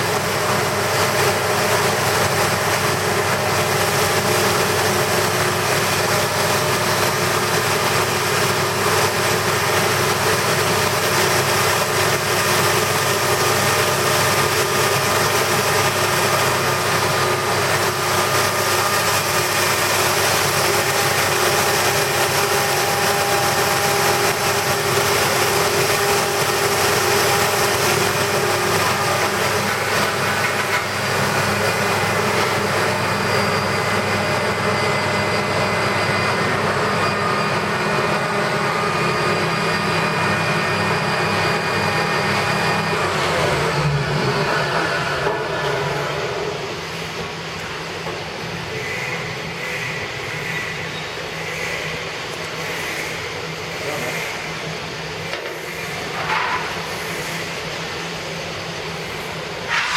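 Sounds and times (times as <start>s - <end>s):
grinding machine running: 0.0s - 59.9s.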